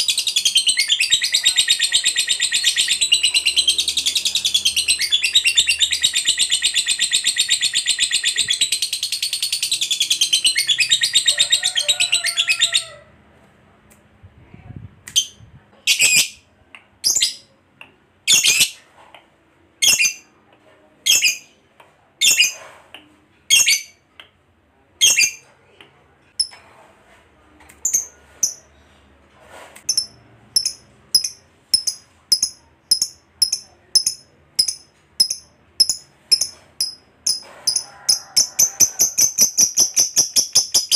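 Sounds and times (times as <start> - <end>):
lovebird chattering trill: 29.9 - 37.8.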